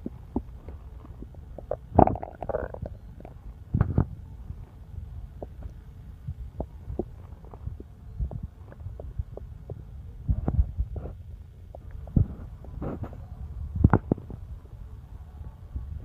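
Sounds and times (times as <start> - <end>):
stomach gurgles: 0.0 - 14.5
stomach rumbling: 0.0 - 14.8.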